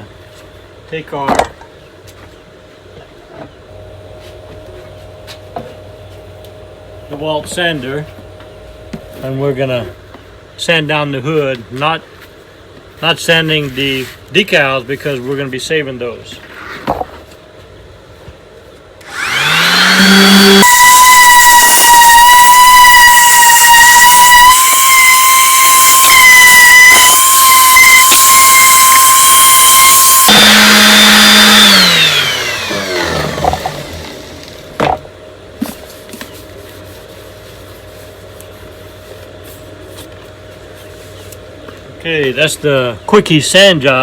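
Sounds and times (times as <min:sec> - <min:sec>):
power sander whining: 0:19.0 - 0:35.0.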